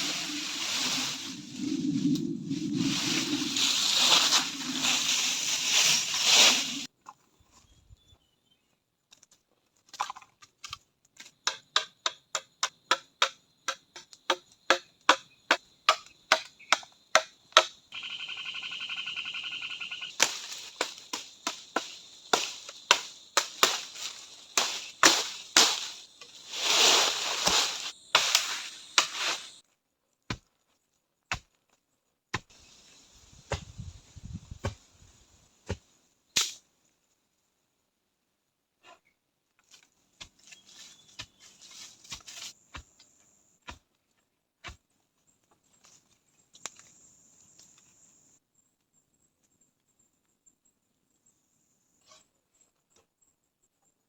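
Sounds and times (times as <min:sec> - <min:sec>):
steady hissing noise: 0:00.0 - 0:06.9, 0:18.0 - 0:29.6.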